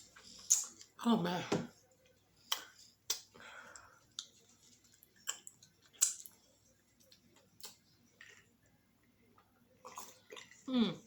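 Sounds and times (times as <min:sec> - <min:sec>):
chewing clicks and smacks: 0:04.2 - 0:06.4.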